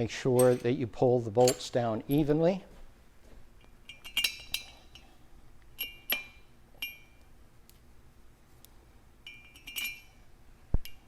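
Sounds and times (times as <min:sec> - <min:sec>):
metal bolts clinking: 0:00.0 - 0:02.4, 0:03.6 - 0:05.1, 0:05.7 - 0:07.2, 0:09.2 - 0:11.0.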